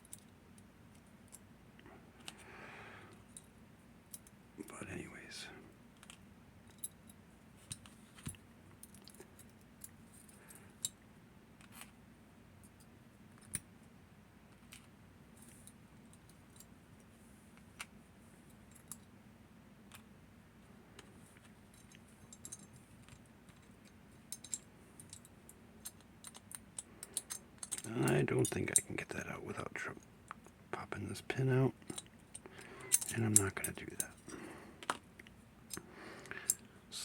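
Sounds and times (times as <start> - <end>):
metallic clicks of small parts: 0.0 - 1.5, 4.1 - 4.4, 6.0 - 11.0, 12.6 - 13.7, 18.5 - 19.1, 21.0 - 28.9, 31.8 - 36.7
quiet steady hum: 0.0 - 37.0.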